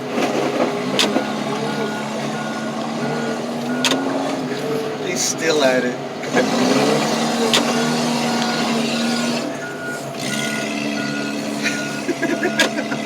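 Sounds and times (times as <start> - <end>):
car engine at high revs: 0.0 - 13.0.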